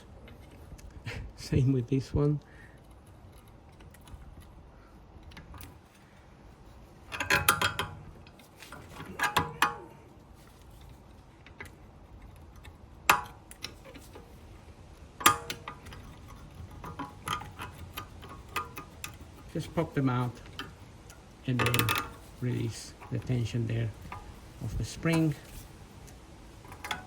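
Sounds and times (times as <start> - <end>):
metal clips clicking and clinking: 7.0 - 10.0, 15.1 - 27.0
metal clatter: 7.0 - 27.0.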